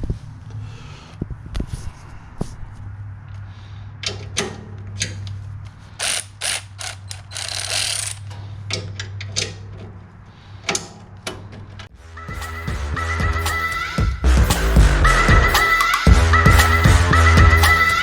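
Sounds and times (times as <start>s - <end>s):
ratchet wrench clicking: 6.0s - 8.3s
music: 12.0s - 18.0s.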